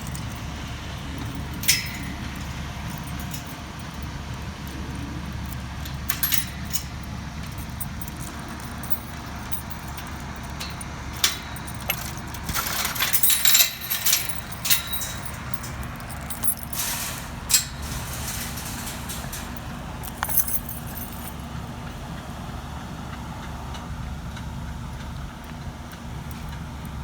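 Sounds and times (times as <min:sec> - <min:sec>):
metallic clanking and jangling: 0:00.0 - 0:21.5
bulldozer diesel engine running: 0:00.0 - 0:27.0.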